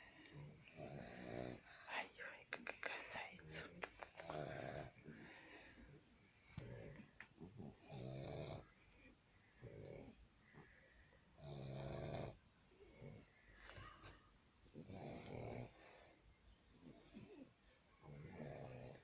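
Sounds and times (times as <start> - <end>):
pet snoring: 0.3 - 1.9, 3.4 - 10.3, 11.3 - 13.3, 14.7 - 16.1, 16.7 - 19.0.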